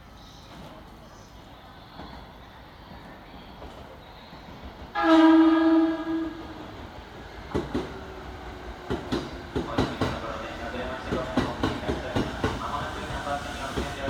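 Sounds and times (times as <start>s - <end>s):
low rumble of trains: 0.0s - 14.0s
electric train horn blast: 5.0s - 6.6s.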